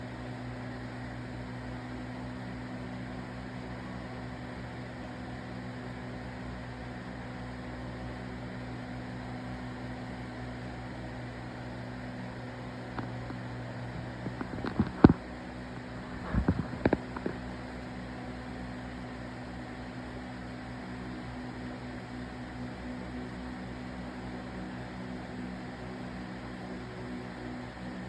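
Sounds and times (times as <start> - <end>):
aquarium pump humming: 9.4 - 20.9.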